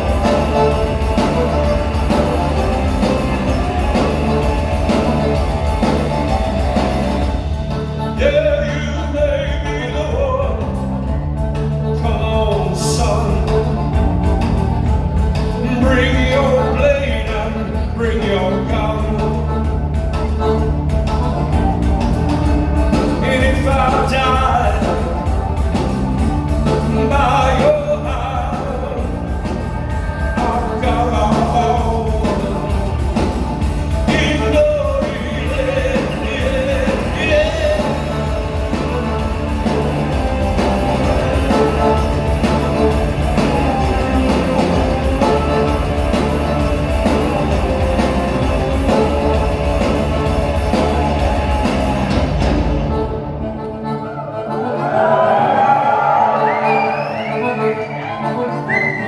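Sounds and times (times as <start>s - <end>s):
person singing: 0.0s - 11.2s, 22.7s - 52.4s
live rock band playing: 0.0s - 59.0s.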